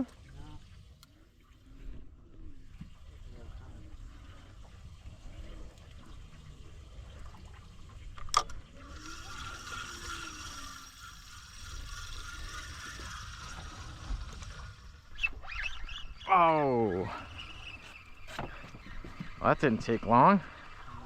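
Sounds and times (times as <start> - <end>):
boat noise: 0.0 - 21.0
fishing reel whirring: 8.0 - 21.0
fishing reel click: 8.2 - 16.0.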